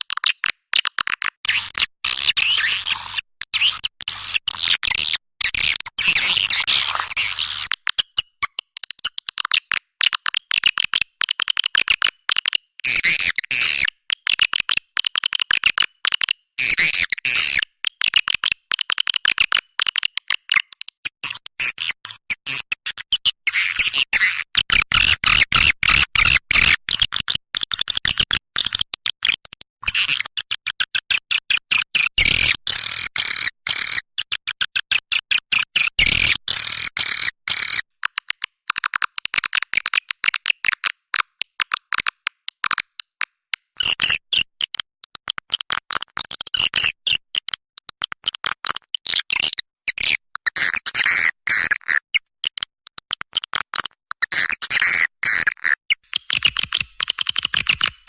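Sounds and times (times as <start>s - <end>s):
rapid bird chirping and twittering: 56.0s - 58.0s.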